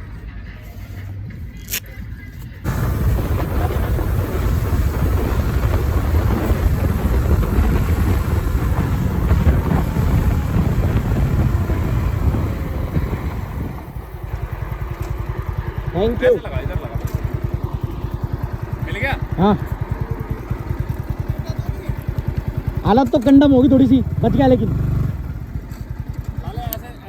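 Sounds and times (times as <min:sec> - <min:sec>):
wind buffeting microphone: 0:02.6 - 0:22.9
motorcycle engine: 0:02.6 - 0:27.0.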